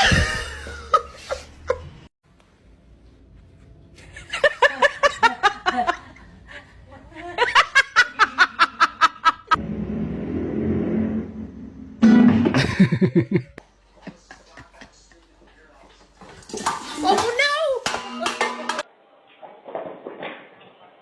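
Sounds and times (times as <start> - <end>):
person laughing: 0.0 - 2.0, 12.4 - 15.0
low rushing noise: 9.6 - 12.6.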